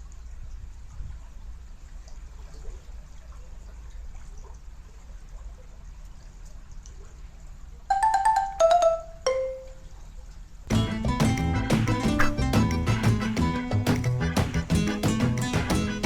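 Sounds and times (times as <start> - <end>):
faint water sounds: 0.0 - 16.0
descending mallet chime: 7.9 - 9.8.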